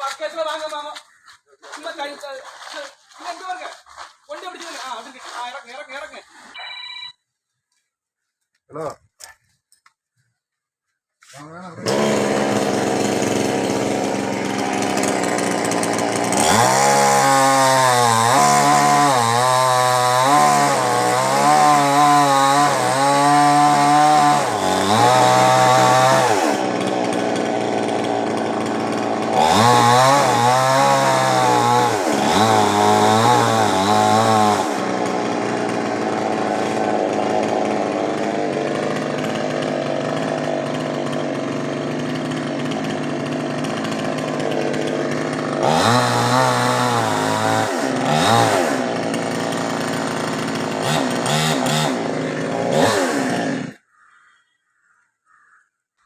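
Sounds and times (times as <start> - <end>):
chainsaw idling and revving: 11.7 - 53.8.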